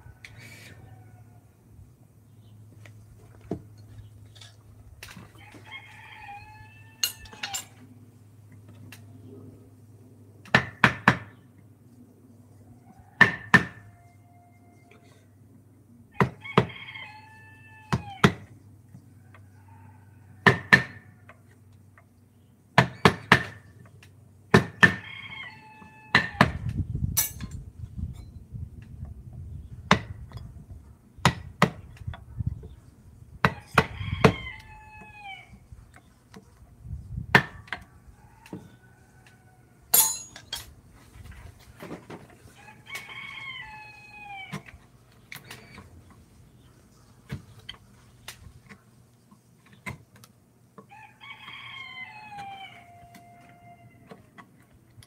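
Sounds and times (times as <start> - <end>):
rooster crowing: 5.4 - 7.8, 12.8 - 15.2, 16.2 - 18.4, 19.2 - 21.2, 24.8 - 26.6, 33.5 - 35.6, 37.8 - 39.9, 42.5 - 44.7, 50.9 - 54.3.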